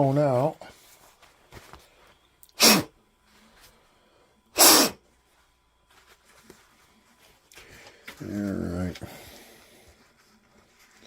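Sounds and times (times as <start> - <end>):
compressed air blasts: 2.6 - 2.9, 4.6 - 5.0.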